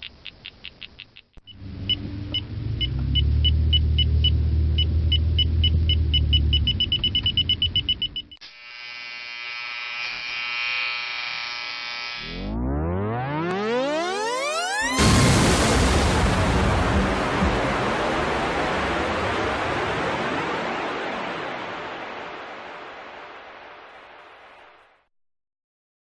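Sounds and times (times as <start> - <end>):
radar detector beeping: 0.0 - 8.4
car running rumble: 1.5 - 8.0
buzzing alert tone: 8.4 - 15.2.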